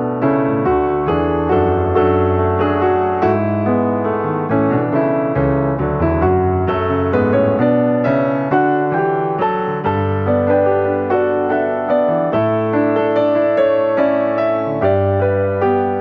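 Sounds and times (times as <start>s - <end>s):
gentle piano music: 0.0s - 16.0s.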